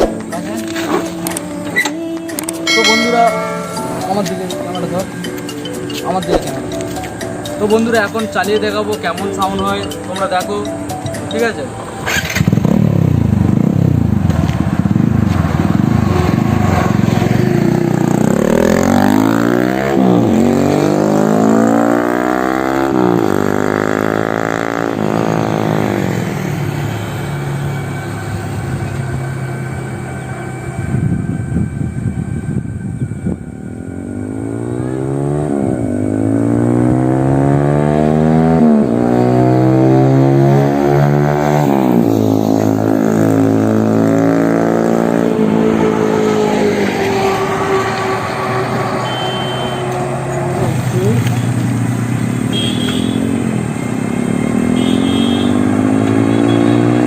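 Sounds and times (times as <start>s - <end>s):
motorcycle engine revving: 11.0s - 57.0s.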